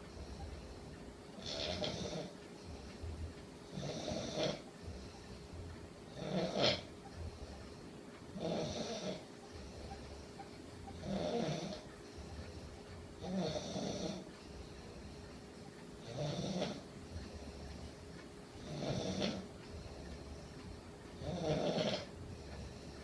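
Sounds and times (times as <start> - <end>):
person snoring: 1.4 - 2.3, 3.7 - 4.6, 6.1 - 6.9, 8.4 - 9.2, 11.0 - 11.8, 13.2 - 14.3, 16.0 - 17.5, 18.6 - 19.5, 21.2 - 22.9.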